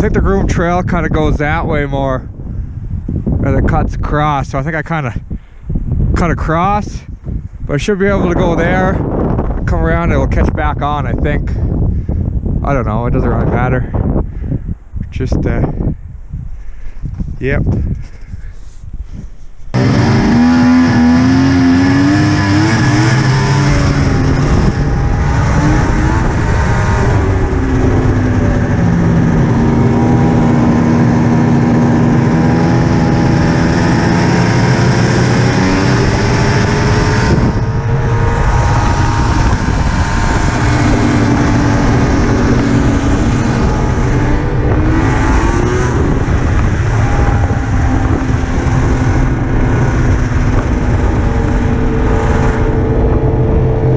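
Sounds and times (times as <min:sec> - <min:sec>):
snowmobile engine running hard: 0:19.7 - 0:53.9.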